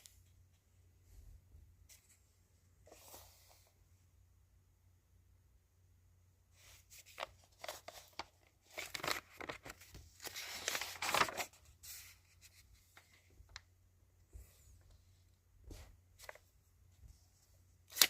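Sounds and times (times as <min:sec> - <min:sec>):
rustling and crinkling: 0:06.6 - 0:13.7.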